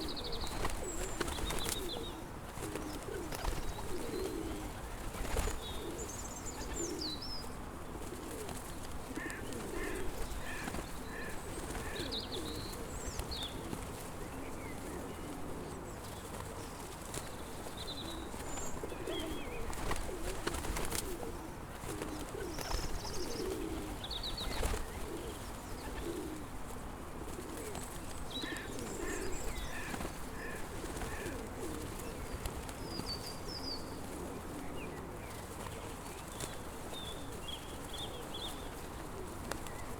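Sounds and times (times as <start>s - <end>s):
small birds chirping: 0.0s - 7.6s, 8.3s - 15.1s, 22.0s - 26.3s, 28.1s - 38.8s
pigeons cooing: 0.0s - 39.9s.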